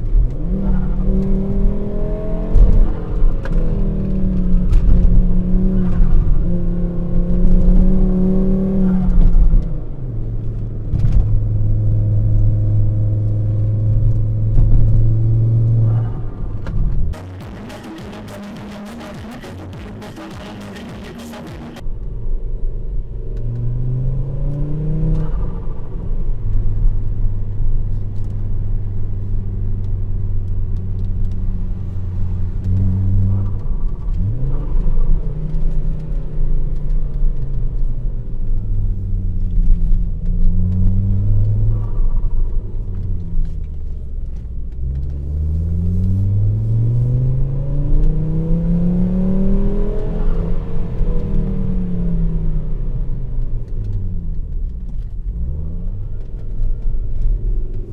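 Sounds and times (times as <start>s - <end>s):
turbocharged car engine revving: 0.0s - 9.6s, 17.2s - 21.8s, 44.8s - 57.9s.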